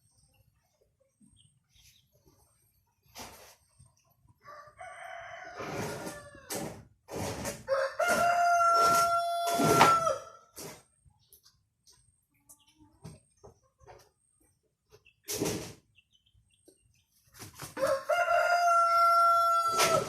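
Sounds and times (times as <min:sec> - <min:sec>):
young rooster crowing: 0:04.4 - 0:06.6, 0:07.7 - 0:10.4, 0:17.8 - 0:20.0.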